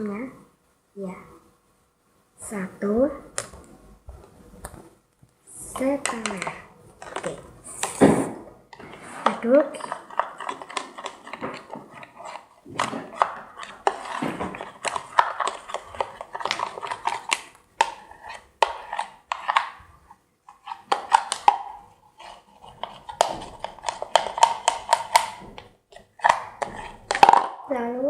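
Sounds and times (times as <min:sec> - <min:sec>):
spatula scraping container: 0:05.5 - 0:27.6.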